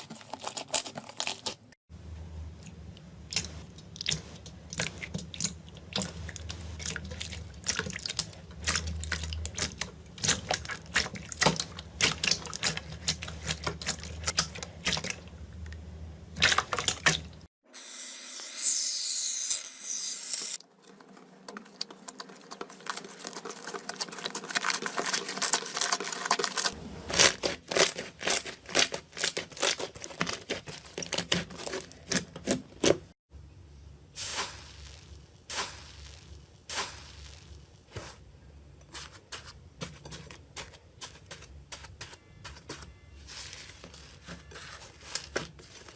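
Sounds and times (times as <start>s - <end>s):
slime squelching and popping: 2.6s - 17.5s.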